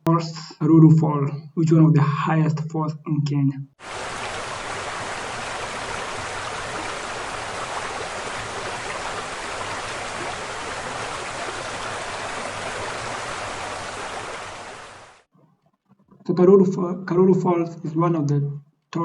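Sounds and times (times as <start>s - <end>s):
waterfall rushing: 3.8s - 15.3s.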